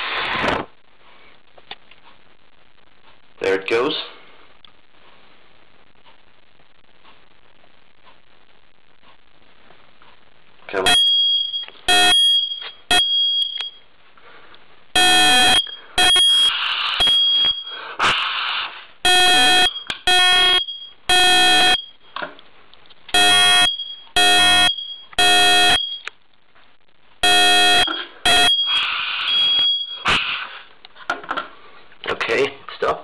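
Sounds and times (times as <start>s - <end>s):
smoke alarm beeping: 10.8s - 13.8s, 15.0s - 17.9s, 19.0s - 22.2s, 23.1s - 26.1s, 27.2s - 30.1s
smoke alarm chirps: 10.8s - 13.8s, 15.0s - 17.8s, 19.0s - 22.1s, 23.1s - 26.1s, 27.2s - 30.1s.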